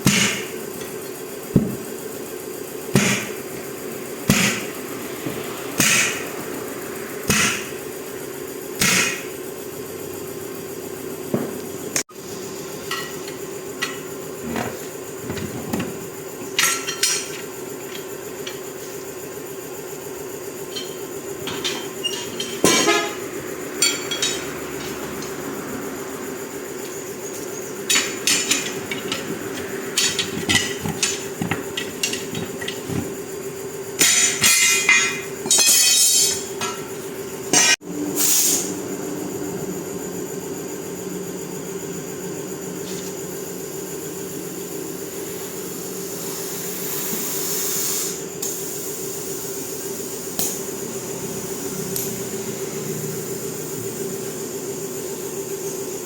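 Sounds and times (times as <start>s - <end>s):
steady hum: 0.0s - 40.9s
metal tools clinking: 20.7s - 23.2s, 27.9s - 33.2s, 34.0s - 36.9s.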